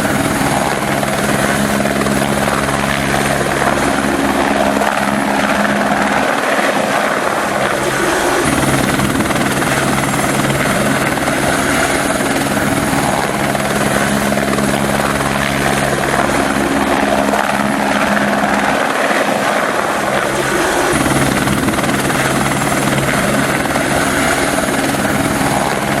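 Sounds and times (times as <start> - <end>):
helicopter rotor and turbine: 0.0 - 26.0.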